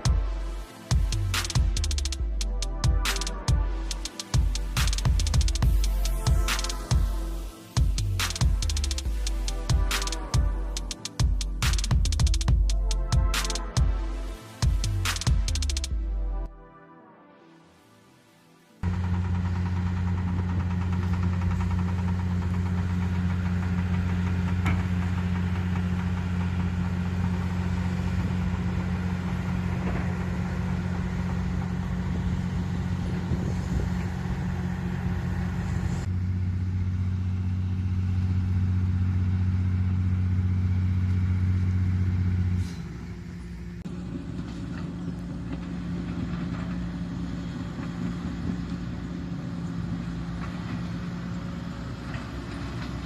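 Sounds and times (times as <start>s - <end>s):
excavator diesel engine droning: 0.0s - 16.4s, 18.8s - 53.0s.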